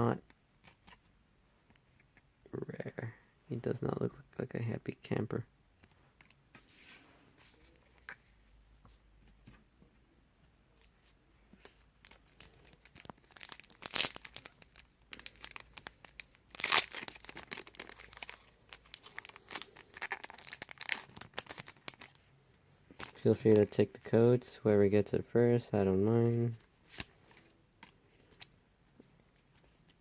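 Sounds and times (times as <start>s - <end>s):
foil wrapper crinkling and tearing: 12.0s - 22.3s.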